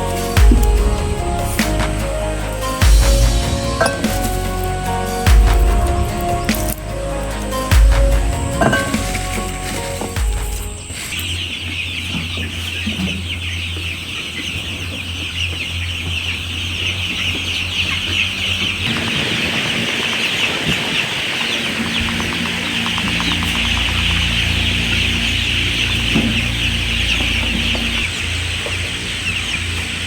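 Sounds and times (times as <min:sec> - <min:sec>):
chickens calling: 0:00.0 - 0:30.0.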